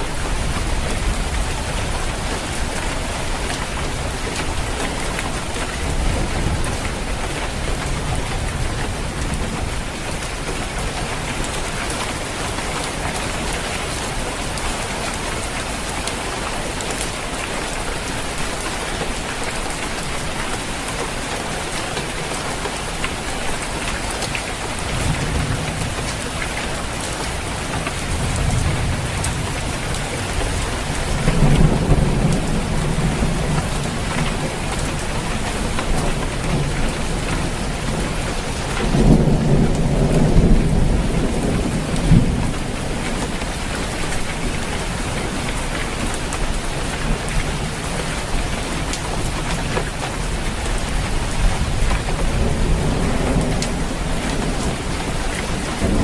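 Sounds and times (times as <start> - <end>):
rain pattering on a roof: 0.0 - 56.0
thunder rumbling: 24.8 - 45.6, 50.5 - 56.0.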